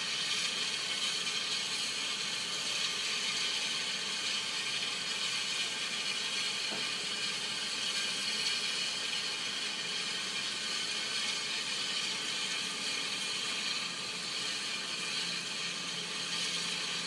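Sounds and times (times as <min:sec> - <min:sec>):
steam locomotive hissing: 0:00.0 - 0:17.0.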